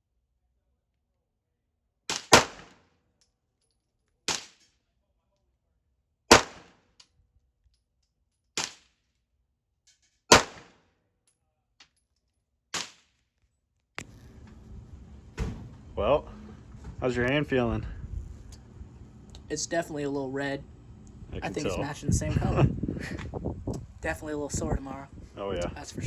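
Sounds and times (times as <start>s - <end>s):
gunshots: 2.1s - 2.8s, 6.3s - 6.8s, 10.3s - 10.8s.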